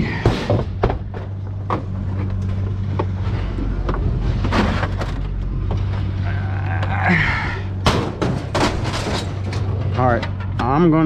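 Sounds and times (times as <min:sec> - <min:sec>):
scrap metal clanking: 0:02.1 - 0:06.2, 0:07.8 - 0:10.6.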